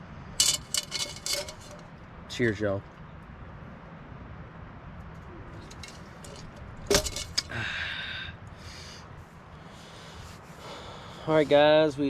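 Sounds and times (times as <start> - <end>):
glassware clinking: 5.6 - 7.5.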